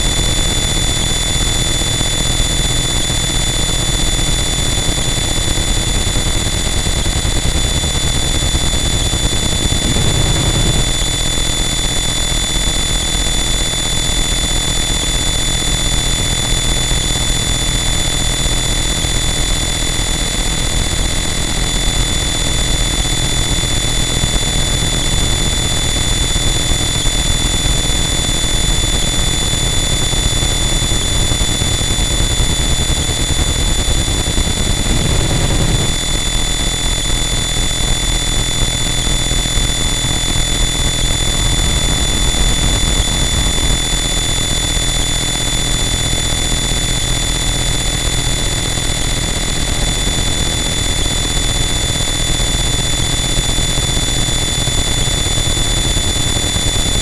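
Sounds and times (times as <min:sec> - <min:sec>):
dense distorted static: 0:08.7 - 0:11.3, 0:32.7 - 0:37.2, 0:40.4 - 0:45.1.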